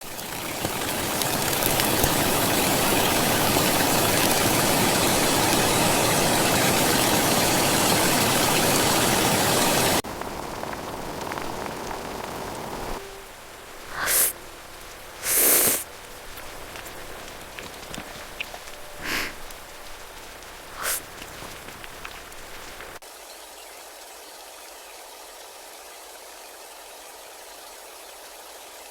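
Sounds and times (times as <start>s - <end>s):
heavy rain: 0.0s - 23.1s
short hissing bursts: 13.0s - 17.5s, 18.1s - 23.0s.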